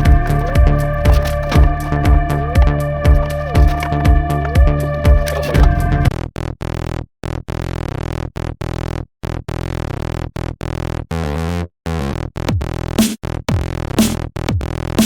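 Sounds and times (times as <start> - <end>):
kick drum: 0.0 - 6.1, 12.4 - 15.0
rhythmic synthesizer pattern: 0.0 - 6.1.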